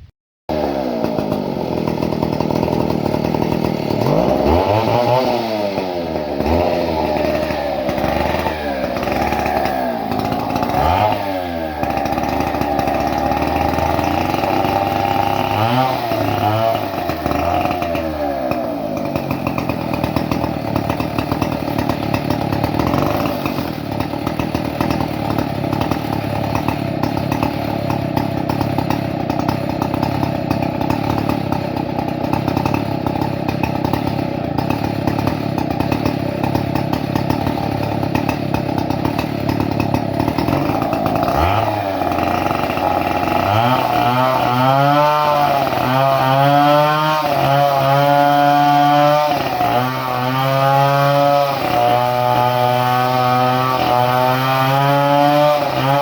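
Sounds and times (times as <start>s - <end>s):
chainsaw engine revving: 0.0s - 56.0s.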